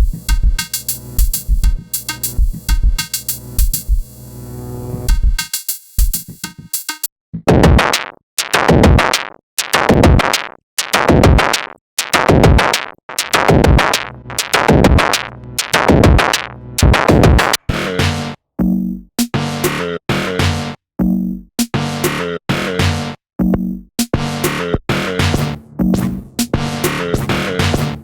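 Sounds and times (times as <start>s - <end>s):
heavy noisy drum hits: 1.2s - 4.1s, 5.1s - 5.4s.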